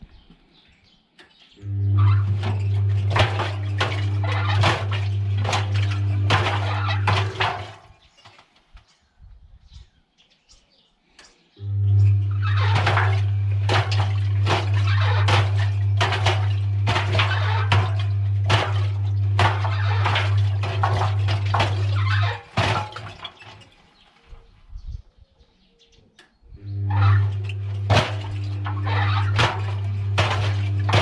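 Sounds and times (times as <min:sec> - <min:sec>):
washing machine motor hum: 0:01.6 - 0:08.0, 0:11.6 - 0:23.8, 0:26.5 - 0:31.0
objects knocking against drum: 0:02.3 - 0:07.8, 0:12.5 - 0:23.7, 0:27.0 - 0:31.0.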